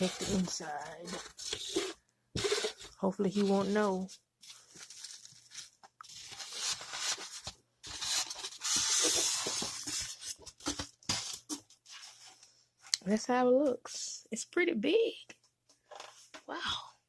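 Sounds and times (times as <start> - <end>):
cardboard and plastic rustling: 0.0 - 12.5.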